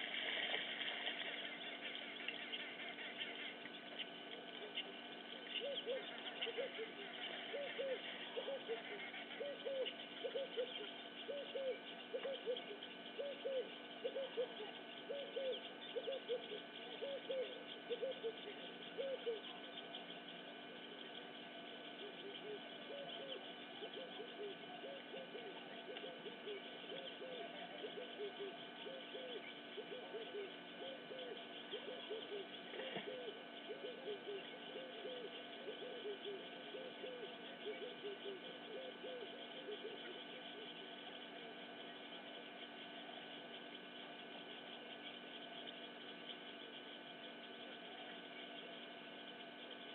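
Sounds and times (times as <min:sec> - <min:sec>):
dove cooing: 0:01.3 - 0:19.7, 0:21.8 - 0:41.4
faint high bird chirps: 0:01.4 - 0:49.9
chorus of hooting calls: 0:04.6 - 0:20.0, 0:21.8 - 0:41.4.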